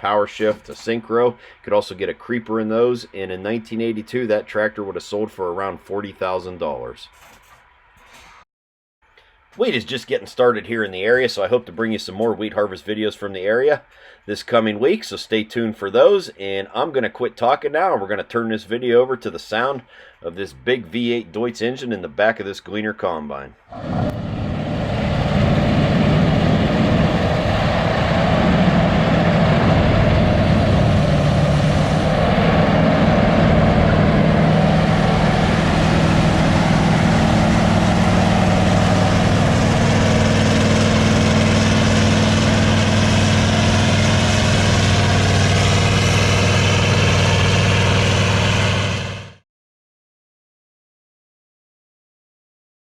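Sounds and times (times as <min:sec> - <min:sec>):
diesel engine running: 0:23.8 - 0:49.4.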